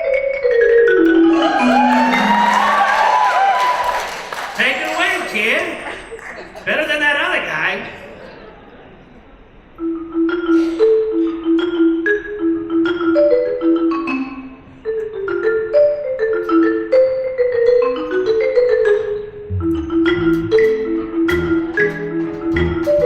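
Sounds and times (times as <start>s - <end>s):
tuned percussion melody: 11.5s - 23.0s.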